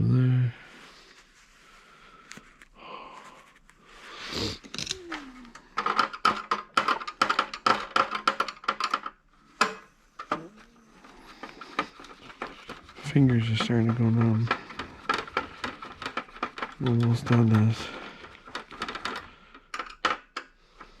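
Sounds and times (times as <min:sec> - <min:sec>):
sharp metallic clicks and rattles: 0:05.8 - 0:10.4, 0:11.0 - 0:21.0.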